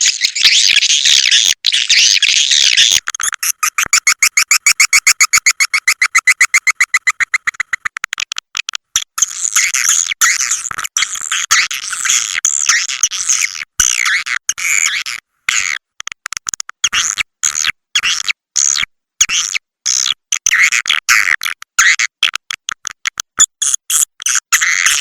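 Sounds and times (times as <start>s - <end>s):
recorded swiftlet twittering: 0.0s - 8.0s
fast clicking chirps: 0.0s - 11.1s.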